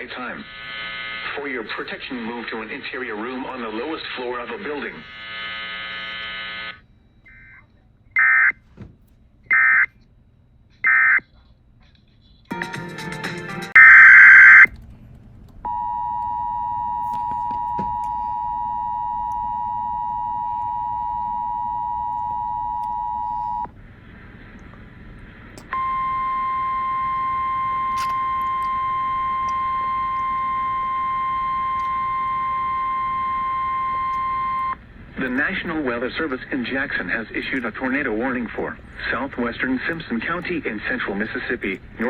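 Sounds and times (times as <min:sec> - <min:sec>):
steady warning tone: 0:00.0 - 0:12.5, 0:13.7 - 0:42.0
two-tone attention signal: 0:13.7 - 0:14.7, 0:15.7 - 0:23.7, 0:25.7 - 0:34.8.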